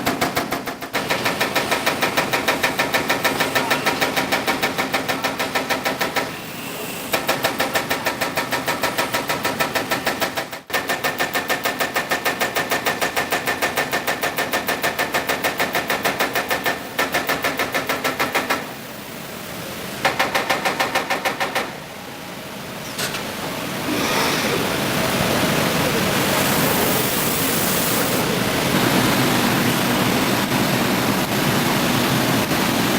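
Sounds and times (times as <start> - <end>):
machine punching sheet metal: 0.0 - 6.4, 7.1 - 18.7.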